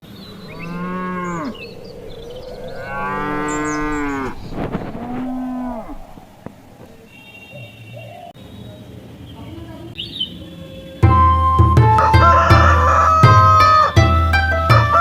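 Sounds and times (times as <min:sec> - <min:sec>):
cattle mooing: 0:00.5 - 0:07.0.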